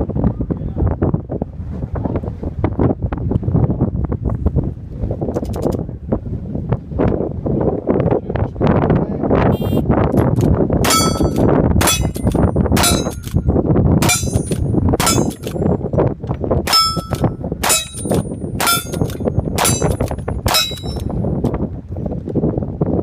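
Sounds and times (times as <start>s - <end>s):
wind rumbling on microphone: 0.0s - 23.0s
gunshots: 10.8s - 13.4s, 14.0s - 15.6s, 16.7s - 21.1s
steel target ringing: 10.8s - 13.4s, 14.0s - 15.7s, 16.7s - 21.2s.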